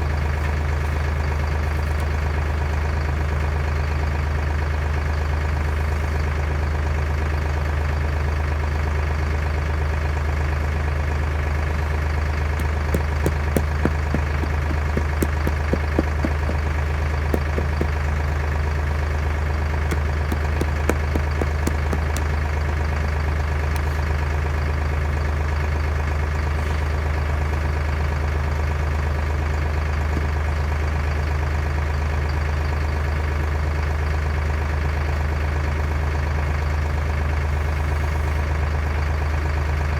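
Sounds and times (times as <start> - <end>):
engine idling: 9.5 - 35.2
sharp clicks and knocks: 12.6 - 16.6, 17.4 - 17.9, 19.9 - 22.3.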